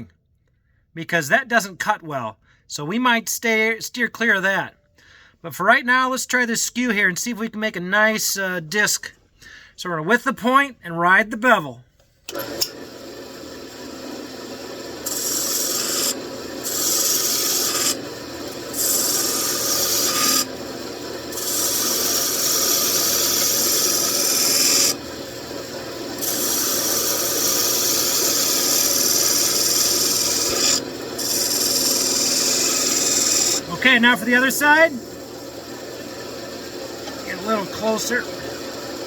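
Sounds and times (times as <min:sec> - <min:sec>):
wood lathe humming: 0:12.3 - 0:39.0
chisel shaving spinning wood: 0:12.4 - 0:39.0.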